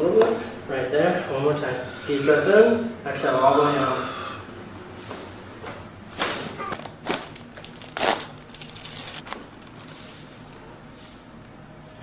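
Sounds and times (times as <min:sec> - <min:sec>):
rustling: 0:06.8 - 0:12.0.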